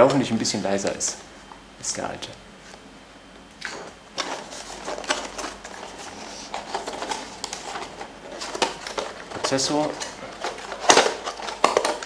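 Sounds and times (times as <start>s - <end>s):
cardboard and plastic rustling: 3.6s - 12.0s.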